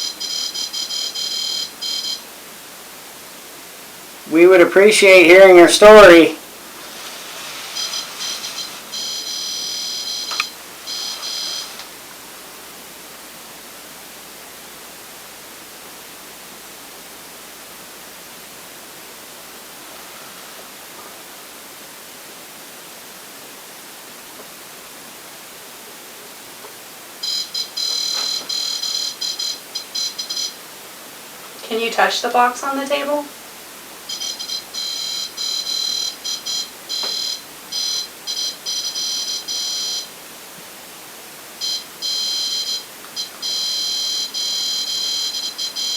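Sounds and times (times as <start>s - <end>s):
high-pitched electronic beeping: 0.0s - 2.2s, 7.7s - 11.8s, 27.2s - 30.6s, 34.1s - 40.1s, 41.6s - 45.9s
faint steady hiss: 0.0s - 45.9s.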